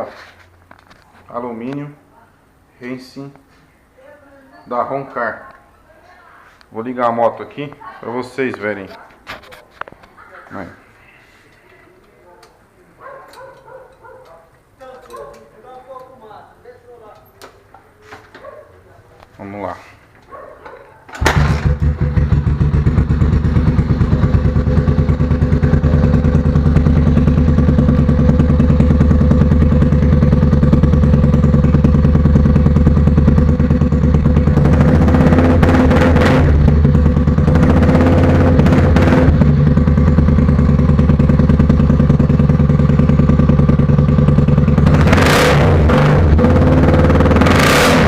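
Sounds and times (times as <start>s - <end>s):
motorcycle starting and idling: 20.1s - 48.0s.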